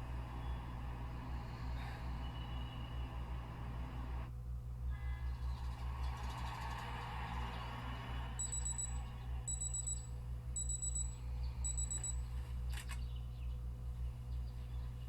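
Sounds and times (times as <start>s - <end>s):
low hum: 5.3s - 12.4s
alarm clock beeping: 8.4s - 12.2s.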